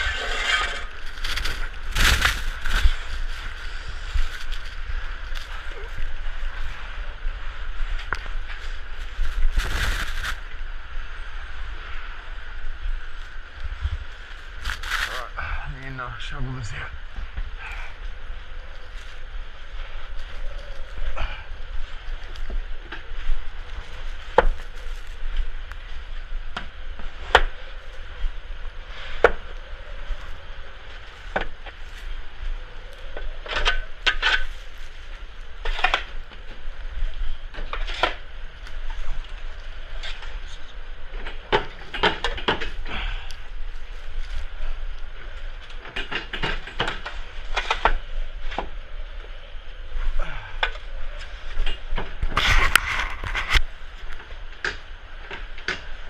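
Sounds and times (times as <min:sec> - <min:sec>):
snow shovel scraping snow: 0:00.0 - 0:04.9.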